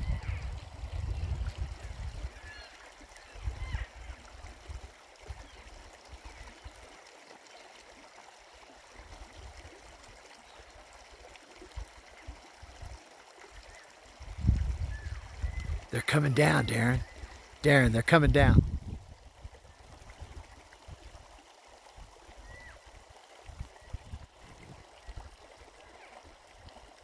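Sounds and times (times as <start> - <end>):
river running: 15.9 - 18.6.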